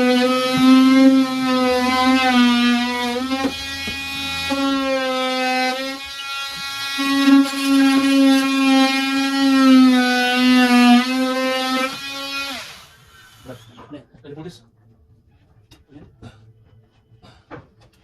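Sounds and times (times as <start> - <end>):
power drill motor whining: 0.0 - 9.9.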